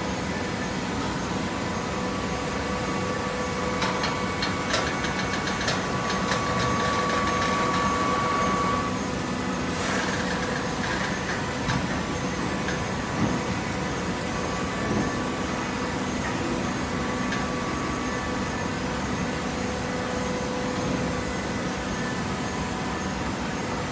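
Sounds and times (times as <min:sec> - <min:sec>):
high machine whine: 0:00.2 - 0:13.2.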